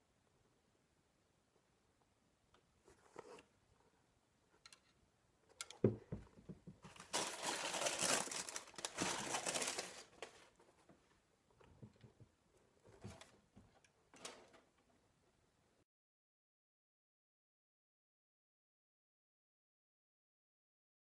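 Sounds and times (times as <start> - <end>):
packaging paper crinkling: 6.9 - 10.6.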